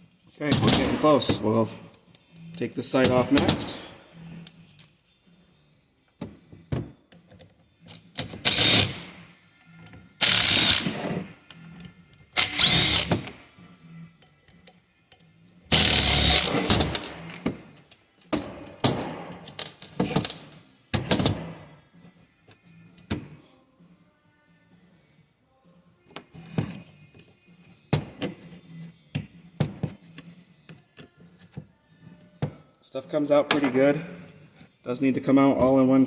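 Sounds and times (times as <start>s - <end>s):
cordless drill driver running: 10.2s - 10.9s, 12.4s - 13.2s.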